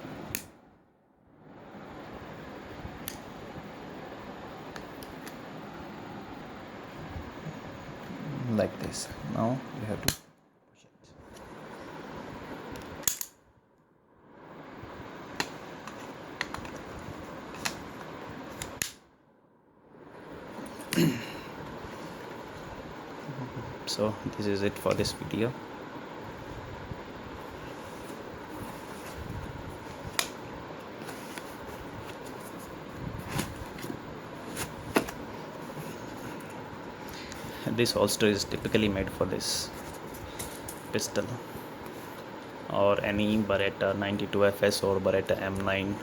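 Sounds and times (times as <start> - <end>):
fan-like hiss: 0.0 - 46.0
handling noise: 27.4 - 36.9.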